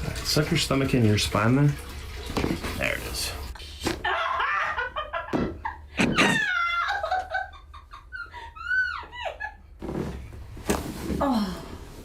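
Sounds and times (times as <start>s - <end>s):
person laughing: 4.0s - 9.7s.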